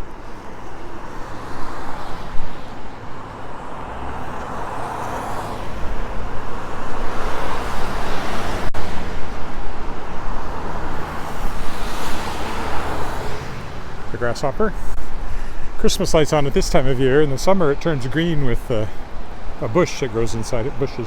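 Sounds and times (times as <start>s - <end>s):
cars passing on wet road: 0.0s - 21.0s.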